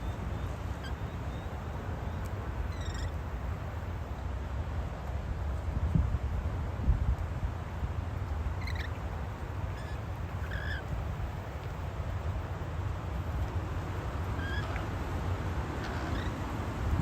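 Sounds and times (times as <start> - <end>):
wind on microphone: 5.5 - 8.7, 14.6 - 17.0.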